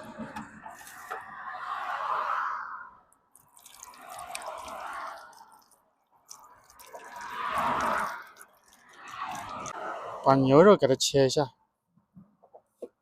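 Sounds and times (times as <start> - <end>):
water pouring and splashing: 0.7 - 1.3, 3.3 - 10.0.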